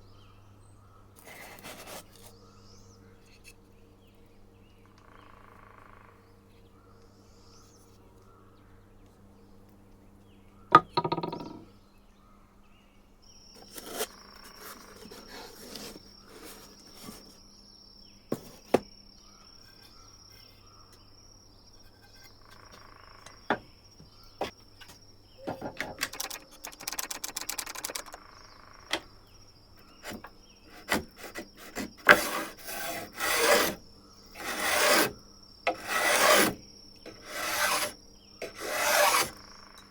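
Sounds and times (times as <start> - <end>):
hand tool scraping wood: 1.2 - 2.3, 13.6 - 17.4, 25.6 - 28.2, 29.8 - 39.4
knock: 10.8 - 11.6.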